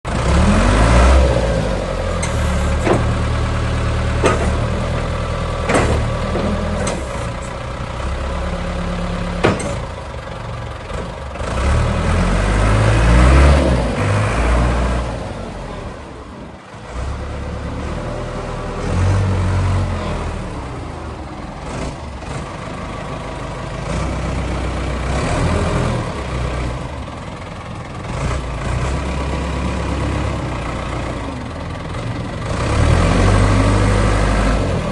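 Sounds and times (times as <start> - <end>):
diesel engine revving: 0.1 - 34.9
sharp knocks: 2.8 - 3.2, 4.2 - 4.7, 5.7 - 7.1, 9.4 - 9.8.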